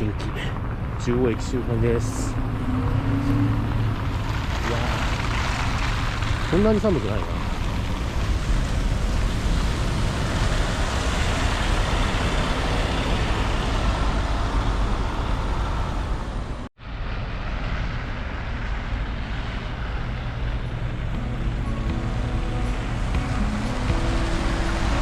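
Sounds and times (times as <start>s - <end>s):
vehicles passing on city street: 0.0s - 25.0s.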